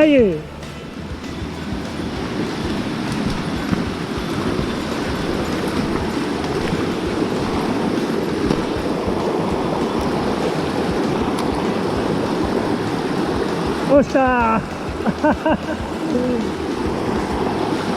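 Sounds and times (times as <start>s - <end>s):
stream water rushing: 0.0s - 17.9s.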